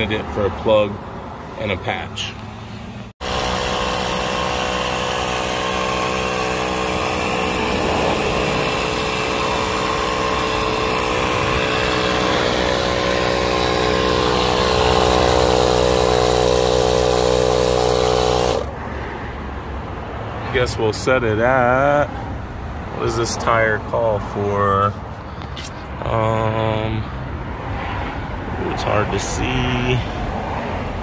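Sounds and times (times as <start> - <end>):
air compressor motor drone: 0.0 - 18.8.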